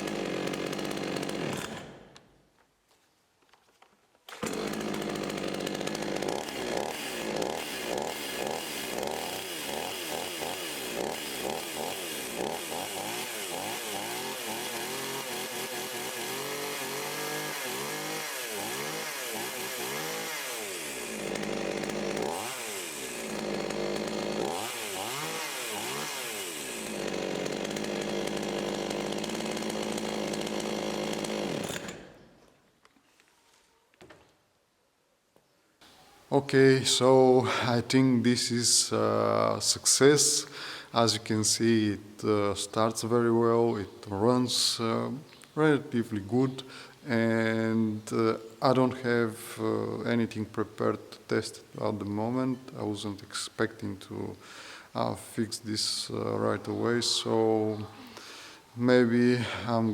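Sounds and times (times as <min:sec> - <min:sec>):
chainsaw engine revving: 0:00.0 - 0:02.1, 0:04.3 - 0:32.2.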